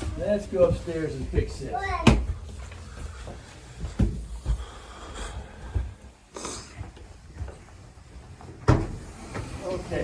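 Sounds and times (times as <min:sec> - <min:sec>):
footfalls on stairs: 0:00.1 - 0:06.2.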